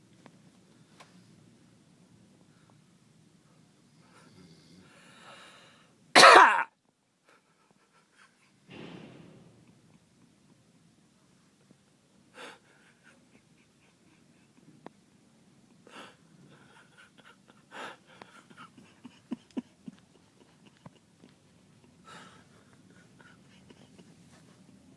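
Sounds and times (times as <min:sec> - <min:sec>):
soft breathing of sleeping person: 0:02.4 - 0:06.0, 0:12.3 - 0:14.9, 0:15.7 - 0:19.8, 0:21.8 - 0:24.9.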